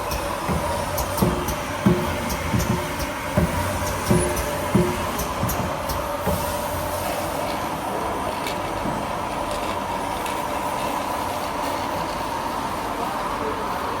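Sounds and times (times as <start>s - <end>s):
machine humming: 0.0s - 8.2s.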